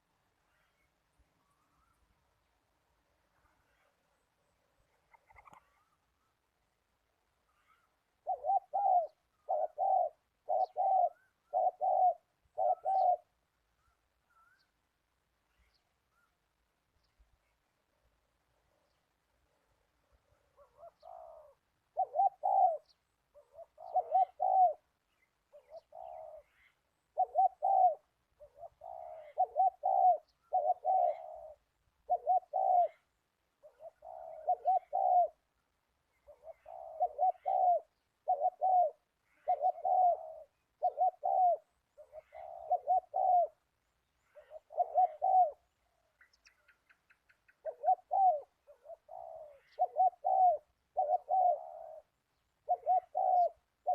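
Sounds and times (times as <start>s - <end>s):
dove cooing: 5.0s - 5.9s, 7.6s - 13.4s, 20.3s - 46.8s, 47.4s - 53.9s.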